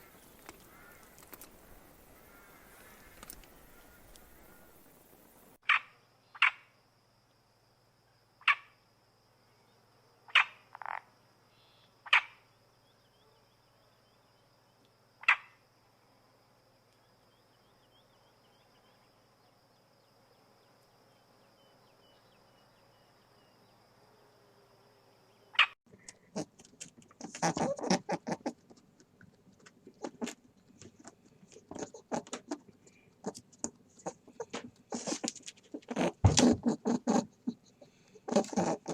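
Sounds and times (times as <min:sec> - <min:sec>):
clicks and rustling: 0:00.2 - 0:01.6, 0:03.0 - 0:04.3, 0:25.9 - 0:27.7.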